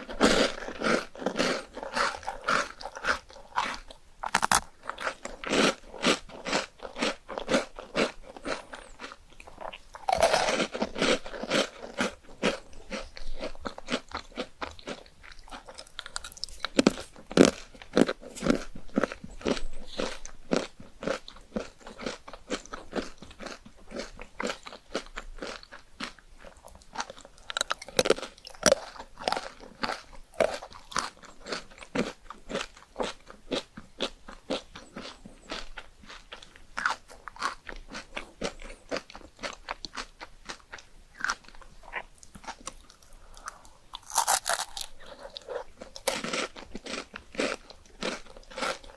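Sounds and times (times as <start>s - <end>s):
person crunching and chewing: 0.0s - 48.9s.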